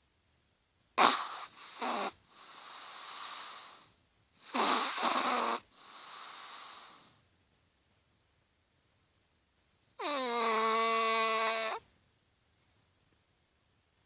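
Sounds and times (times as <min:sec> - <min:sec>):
small dog snoring: 0:01.0 - 0:07.2, 0:10.0 - 0:11.8.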